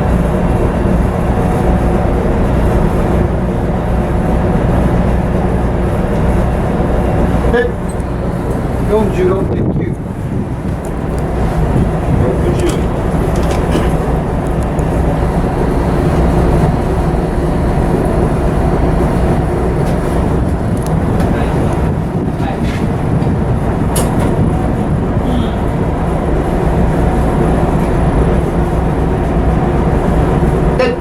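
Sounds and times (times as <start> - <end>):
ship diesel engine rumble: 0.0 - 31.0.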